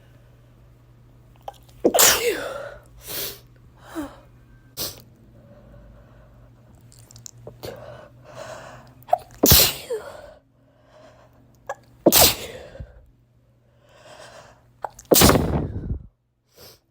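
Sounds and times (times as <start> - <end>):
person sneezing: 1.5 - 3.4, 9.1 - 10.4, 11.7 - 12.9, 14.8 - 15.8.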